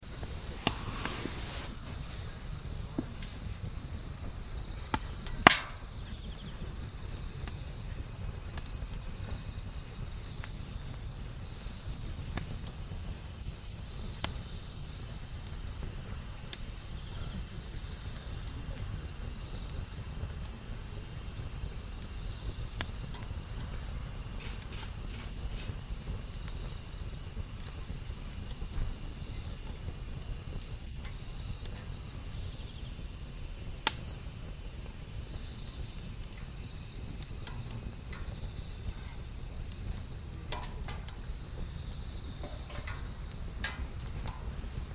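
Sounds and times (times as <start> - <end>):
insects chirping: 0.0 - 44.9
wood fire crackling: 0.0 - 44.9.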